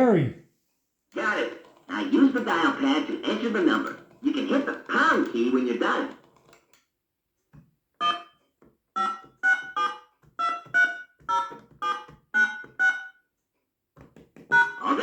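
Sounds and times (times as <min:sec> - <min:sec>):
phone keypad electronic notes: 0:08.0 - 0:13.3, 0:14.5 - 0:15.0.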